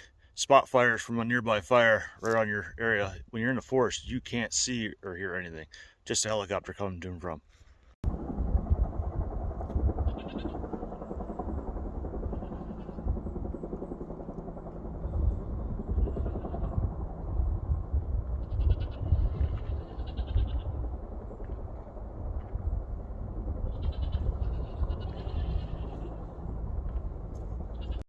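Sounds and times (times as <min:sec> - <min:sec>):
helicopter rotor thudding: 0:08.1 - 0:18.3.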